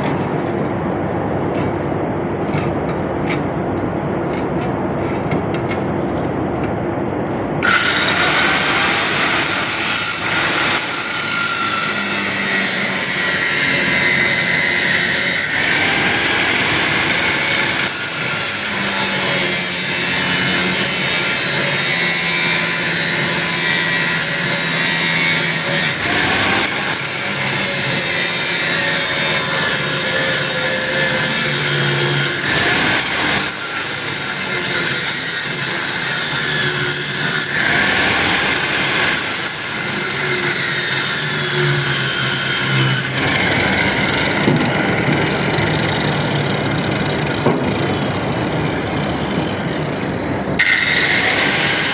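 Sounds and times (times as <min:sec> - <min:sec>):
angle grinder grinding metal: 0:07.6 - 0:47.4, 0:50.6 - 0:51.9.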